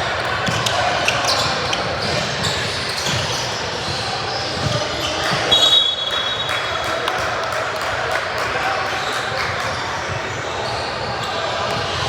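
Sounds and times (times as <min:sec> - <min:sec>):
basketballs bouncing on gym floor: 0:00.3 - 0:05.7
referee's whistle blast: 0:05.5 - 0:06.6.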